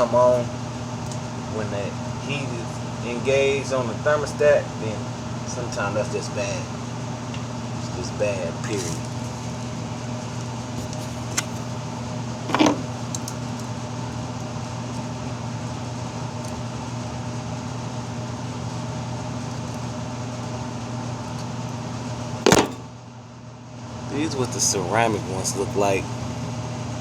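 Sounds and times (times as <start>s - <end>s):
fan motor humming: 0.0s - 27.0s
brief knock or rustle: 22.4s - 22.8s.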